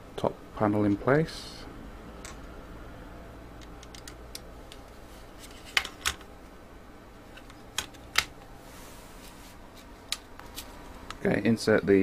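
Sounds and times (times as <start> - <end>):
plastic parts clicking: 3.6 - 4.9.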